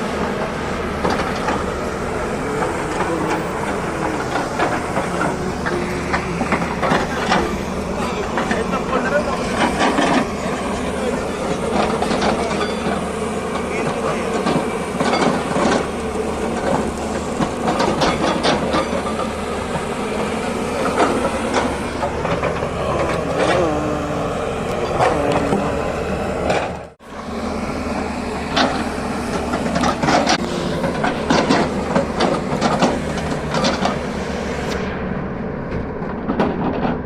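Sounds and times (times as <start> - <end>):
diesel engine running: 0.0 - 37.0
metallic clanks and knocks: 11.4 - 23.6, 28.5 - 34.1.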